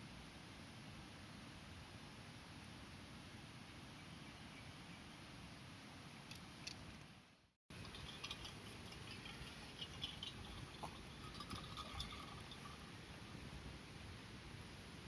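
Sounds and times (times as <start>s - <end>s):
firewood crackling and popping: 7.7s - 12.9s.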